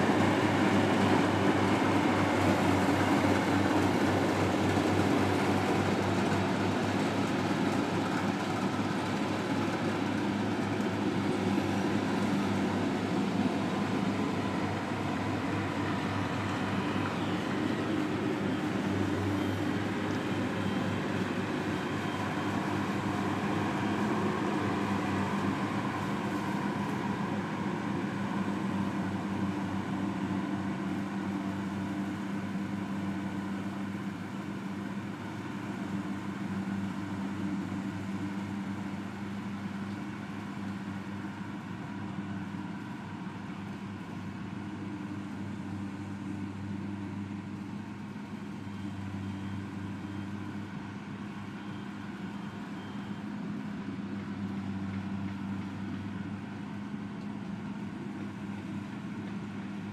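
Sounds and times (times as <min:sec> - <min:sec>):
farm machine engine running: 0:00.0 - 0:59.9.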